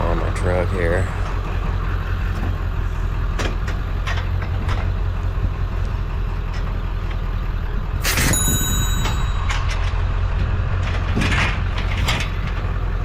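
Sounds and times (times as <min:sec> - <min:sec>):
loud metal clang ringing: 0:08.0 - 0:10.2.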